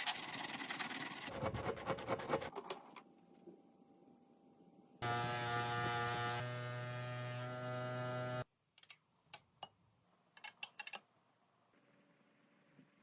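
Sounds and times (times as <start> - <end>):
electric motor humming: 5.0 - 8.4.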